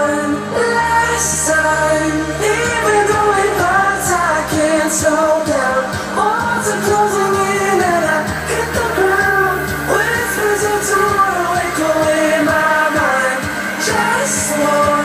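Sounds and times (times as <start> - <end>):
person singing: 0.0 - 15.0.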